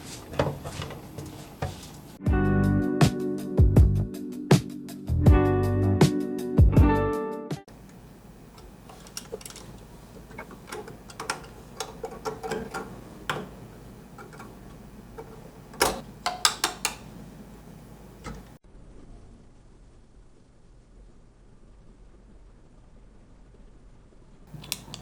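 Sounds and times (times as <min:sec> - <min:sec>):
computer parts clicking and tapping: 0:08.6 - 0:17.2, 0:18.2 - 0:18.6.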